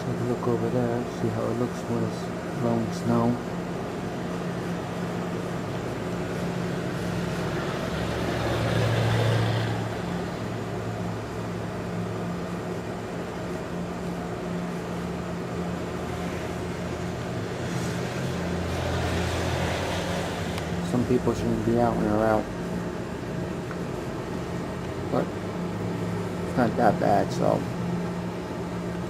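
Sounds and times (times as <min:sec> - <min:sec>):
steady low hum: 0:00.0 - 0:29.0
vehicle approaching: 0:04.6 - 0:11.7.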